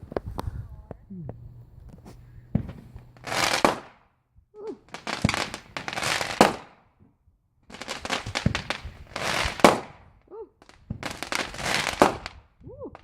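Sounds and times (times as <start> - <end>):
fireworks crackling pops: 0.0 - 13.0
loud hissing firework burst: 1.7 - 4.0, 4.8 - 6.8, 7.7 - 10.1, 10.7 - 12.4.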